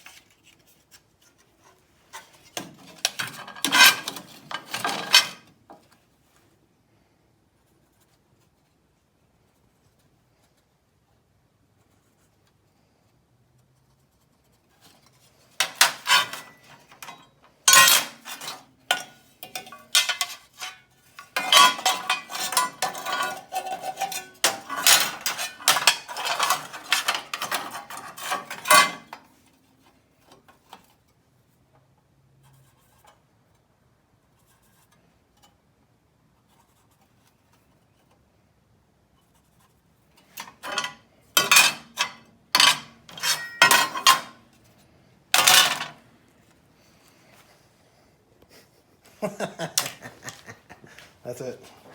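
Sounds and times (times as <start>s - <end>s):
metal parts clanking: 2.2s - 5.5s, 15.6s - 29.3s, 40.2s - 44.4s, 45.3s - 46.0s.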